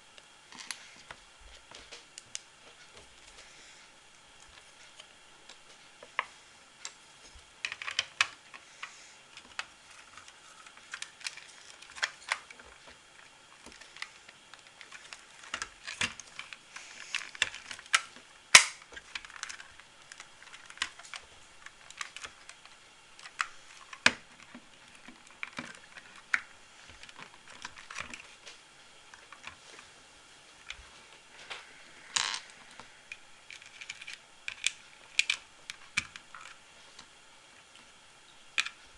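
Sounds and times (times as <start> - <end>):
plastic pieces snapping together: 13.6 - 29.6.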